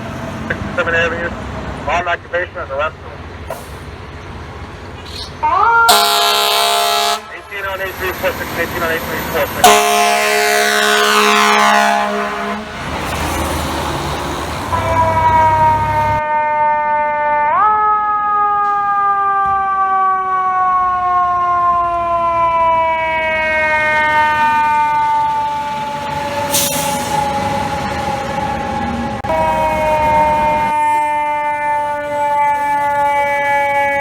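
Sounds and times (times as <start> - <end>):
fire truck siren winding: 14.7 - 34.0.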